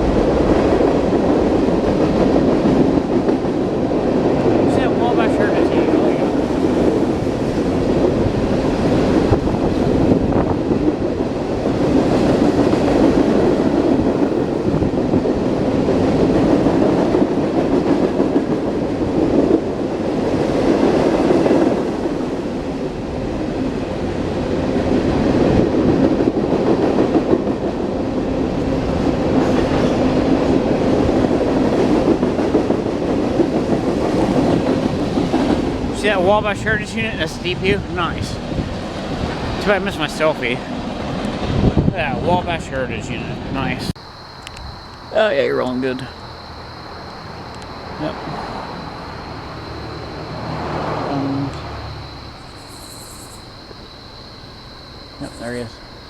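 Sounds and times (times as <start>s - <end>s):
wheels clacking over rail joints: 0.0s - 41.9s
freight train rolling past: 0.0s - 56.0s.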